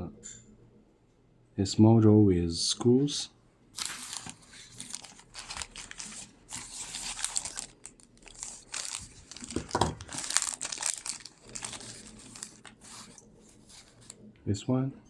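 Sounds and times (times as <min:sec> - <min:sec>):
small parts crinkling and rustling: 0:03.8 - 0:14.3.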